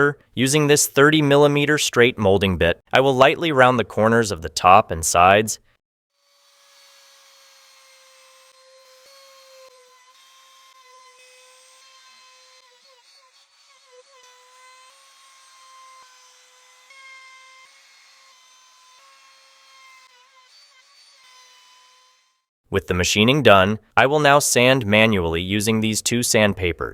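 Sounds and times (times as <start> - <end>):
router whining cutting wood: 6.3 - 22.4.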